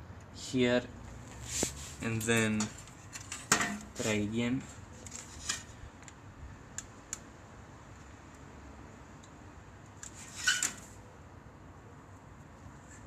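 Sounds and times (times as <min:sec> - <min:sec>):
scraping rustle: 0:01.2 - 0:05.7, 0:10.1 - 0:11.0.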